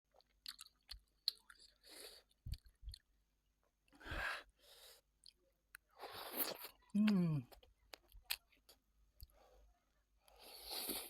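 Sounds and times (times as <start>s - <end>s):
chewing mouth clicks and smacks: 0.1s - 3.1s.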